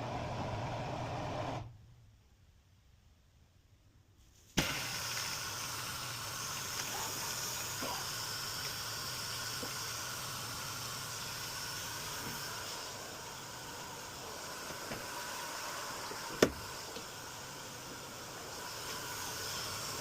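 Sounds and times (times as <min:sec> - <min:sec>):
water rushing into washer: 0:04.6 - 0:20.0.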